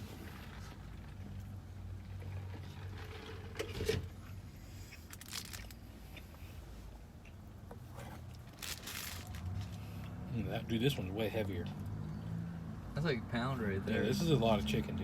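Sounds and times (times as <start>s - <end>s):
soft clicks and crunches: 4.9s - 6.4s, 7.2s - 9.8s.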